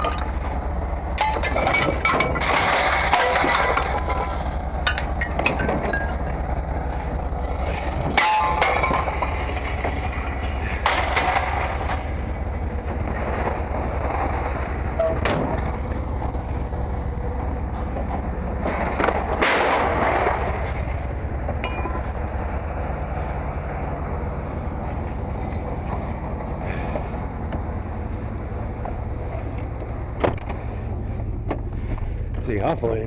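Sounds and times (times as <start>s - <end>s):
engine rumbling: 0.0s - 33.0s
scrap metal clanging: 1.2s - 6.3s, 7.2s - 12.3s.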